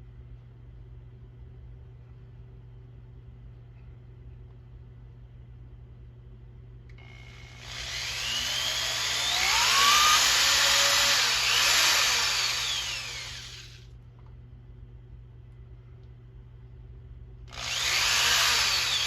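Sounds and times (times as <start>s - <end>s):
electric drill boring: 7.0s - 13.8s, 17.5s - 19.0s.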